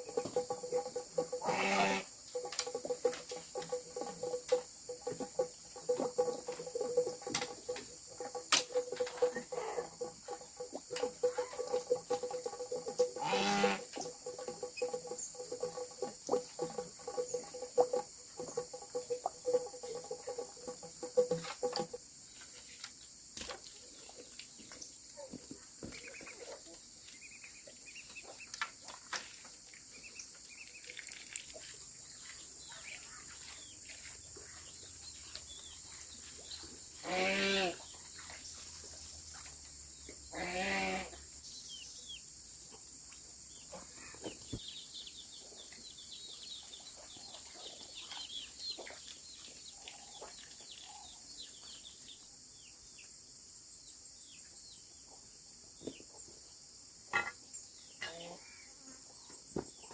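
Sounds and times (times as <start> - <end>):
farm animal bleating: 1.2 - 2.2, 13.1 - 14.1, 37.0 - 37.9, 40.3 - 41.2.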